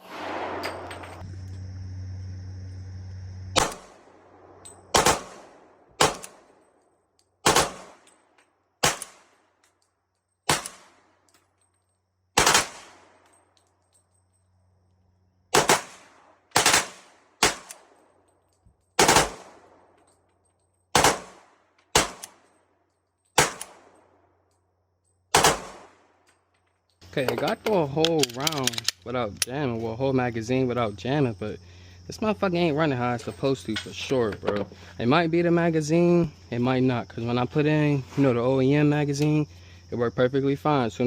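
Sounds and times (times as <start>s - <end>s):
pistol shots: 3.6s - 6.6s, 7.4s - 8.2s, 8.8s - 9.4s, 10.5s - 11.1s, 12.4s - 13.2s, 15.5s - 18.0s, 19.0s - 19.8s, 20.9s - 22.4s, 23.4s - 24.0s, 25.3s - 26.1s.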